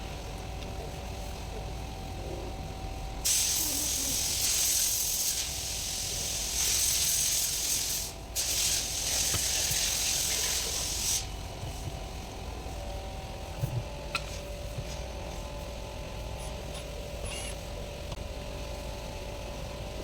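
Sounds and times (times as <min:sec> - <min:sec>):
pressurised spray hissing: 0:03.2 - 0:11.3.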